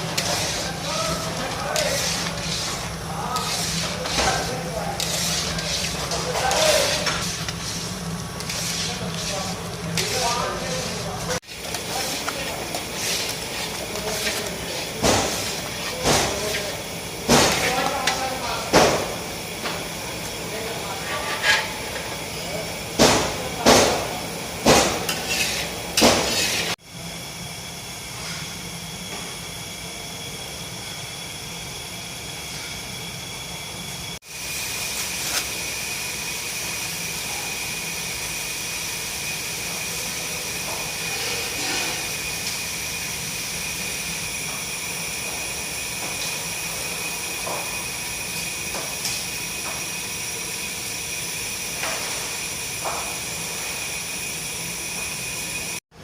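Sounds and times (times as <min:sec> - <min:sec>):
steady cooking hiss: 0:00.0 - 0:56.0.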